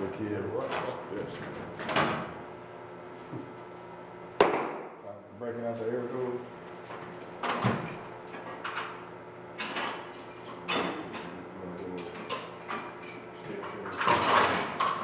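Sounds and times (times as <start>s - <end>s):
tools knocking and clattering: 12.0s - 15.0s.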